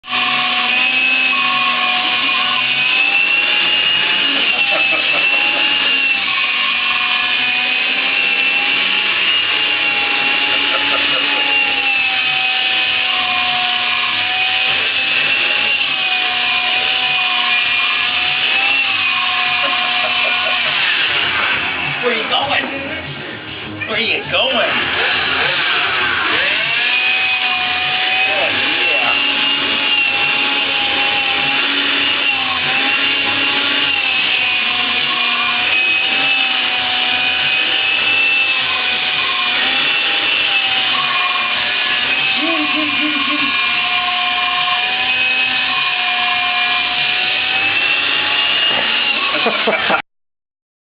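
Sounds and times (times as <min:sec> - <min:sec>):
vacuum cleaner motor whine: 0:00.0 - 0:50.0.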